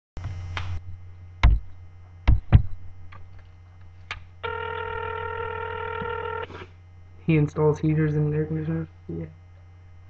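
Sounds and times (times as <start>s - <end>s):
low steady hum: 0.2s - 10.0s
telephone line tone: 4.4s - 6.6s.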